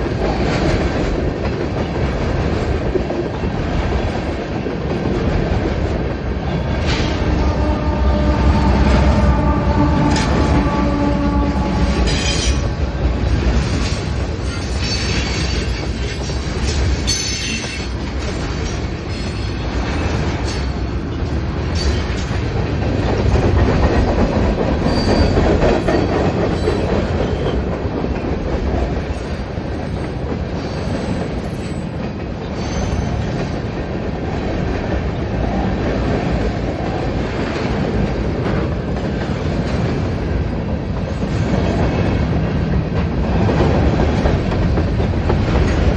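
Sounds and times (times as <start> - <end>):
train wheels rumbling on rails: 0.0 - 45.9
train horn: 6.8 - 13.0.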